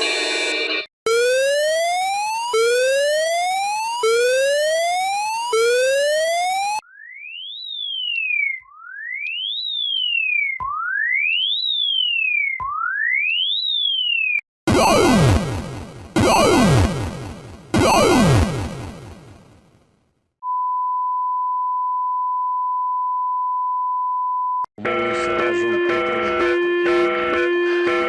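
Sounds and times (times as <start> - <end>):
buzzy rising siren whoops: 1.1 - 6.8, 14.7 - 19.4
sweeping siren tone: 1.1 - 19.5.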